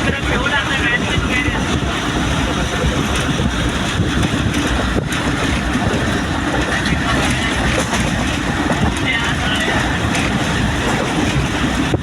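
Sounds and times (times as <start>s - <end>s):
train rumbling along track: 0.0s - 12.0s.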